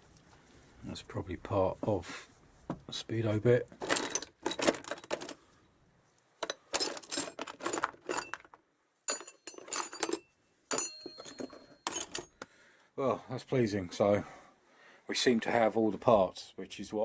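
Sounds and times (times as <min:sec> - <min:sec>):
metal parts clinking: 0:03.8 - 0:05.4, 0:06.4 - 0:12.4.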